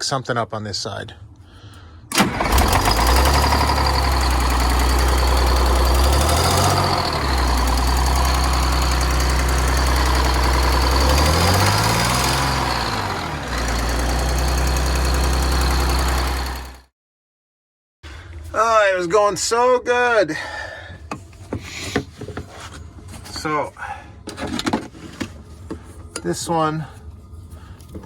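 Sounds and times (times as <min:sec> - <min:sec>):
diesel engine starting and running: 0:01.7 - 0:16.9.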